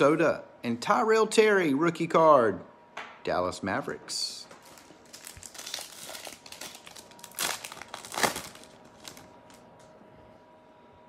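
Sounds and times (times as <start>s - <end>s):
foil wrapper crinkling: 4.5s - 9.7s.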